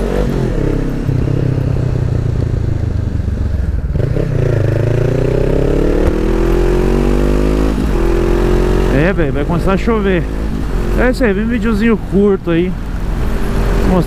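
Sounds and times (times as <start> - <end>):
motorcycle engine accelerating: 0.0 - 14.0.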